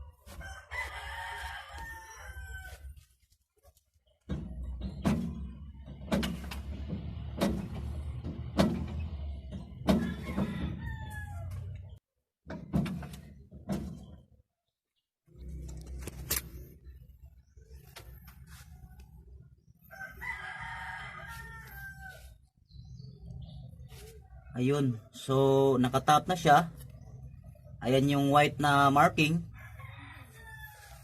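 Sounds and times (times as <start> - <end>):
rooster crowing: 0.3 - 2.9, 9.9 - 11.8, 19.9 - 22.4, 29.3 - 31.0
sharp knocks: 4.3 - 10.8, 12.4 - 14.2.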